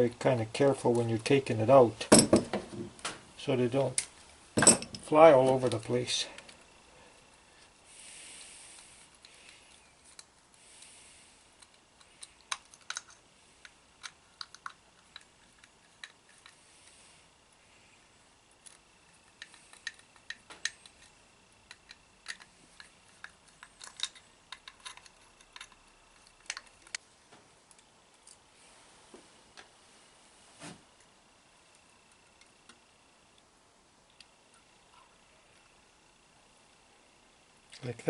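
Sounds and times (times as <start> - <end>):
metallic clicks of small tools: 11.6 - 16.6, 18.6 - 27.0.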